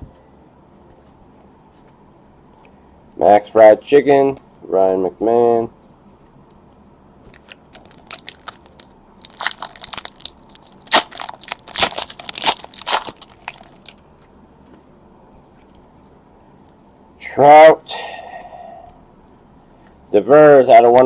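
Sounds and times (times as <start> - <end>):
wrapper crinkling and tearing: 7.3 - 14.0.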